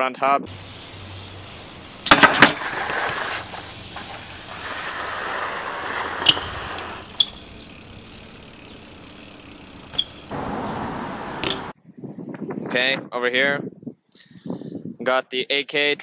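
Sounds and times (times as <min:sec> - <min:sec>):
road vehicle passing by: 0:03.0 - 0:11.7.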